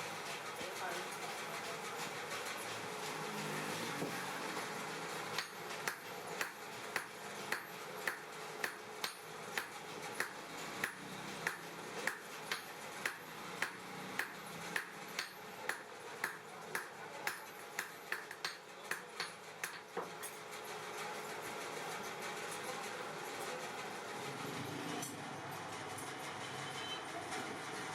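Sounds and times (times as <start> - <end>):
hammer striking steel on anvil: 5.3 - 20.4.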